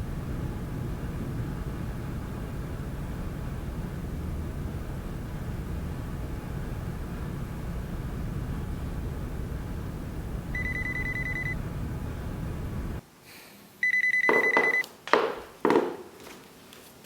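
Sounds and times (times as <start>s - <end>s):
steady low rumble: 0.0s - 13.0s
electronic telephone ringing: 10.6s - 11.6s, 13.8s - 14.9s
knocks: 14.2s - 16.1s.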